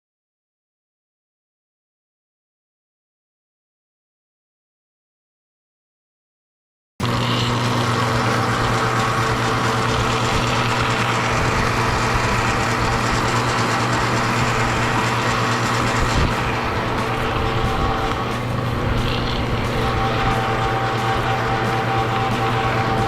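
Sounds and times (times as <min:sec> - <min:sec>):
electric metalworking tool running: 0:07.0 - 0:23.0
low mains hum: 0:07.0 - 0:23.0.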